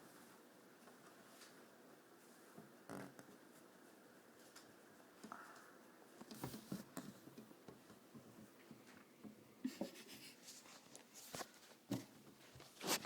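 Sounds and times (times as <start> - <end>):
faint scratching: 9.7 - 13.0.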